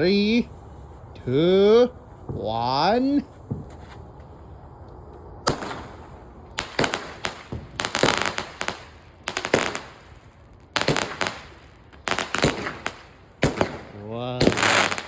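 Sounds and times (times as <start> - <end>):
firework bangs and crackles: 2.0 - 4.4, 5.3 - 15.0.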